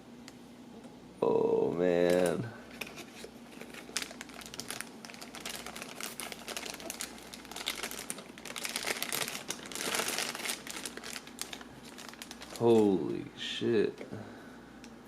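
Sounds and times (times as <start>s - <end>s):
packaging crinkling and rustling: 2.0s - 13.1s.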